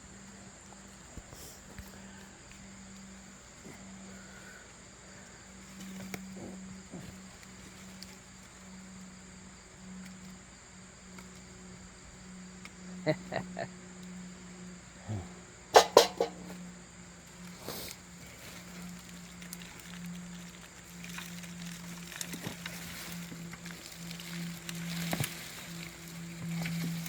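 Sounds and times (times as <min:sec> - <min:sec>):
insects droning: 0:00.0 - 0:27.0
sharp knocks: 0:15.8 - 0:16.6.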